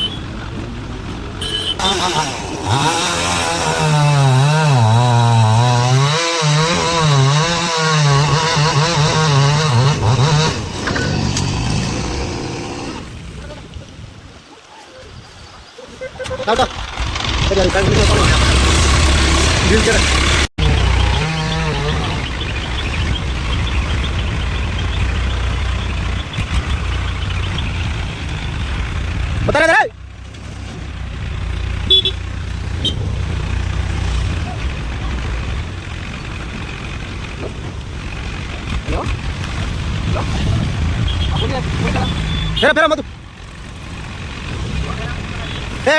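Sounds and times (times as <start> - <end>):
chainsaw cutting wood: 1.8 - 13.1, 18.1 - 22.2
engine running steadily: 16.4 - 45.8.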